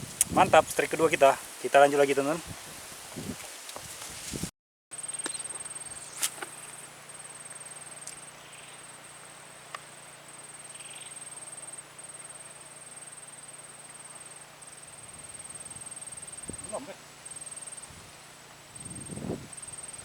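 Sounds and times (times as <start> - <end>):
insect trilling: 5.0 - 18.1.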